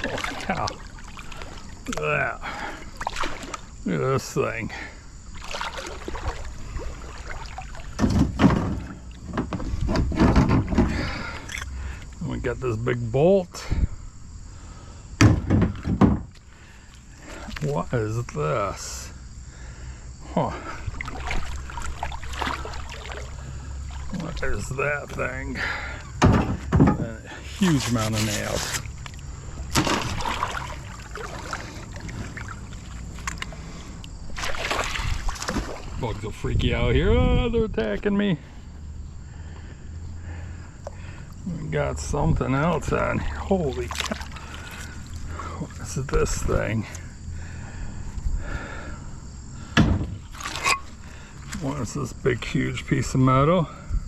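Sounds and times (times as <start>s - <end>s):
river water splashing around kayak: 0.0s - 12.3s, 15.2s - 18.4s, 20.5s - 36.5s, 42.8s - 47.8s, 49.6s - 51.7s
knocks: 15.2s - 16.4s, 26.2s - 27.1s, 49.8s - 50.2s
loud splash or knock: 29.7s - 31.6s, 34.4s - 35.9s.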